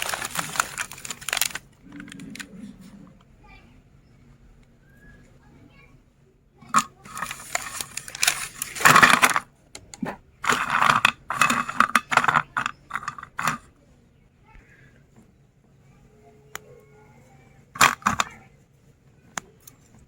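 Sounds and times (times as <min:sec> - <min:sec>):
hard candies crunching in grinder: 0:00.0 - 0:02.5, 0:06.7 - 0:09.5, 0:10.4 - 0:13.7, 0:17.8 - 0:18.3.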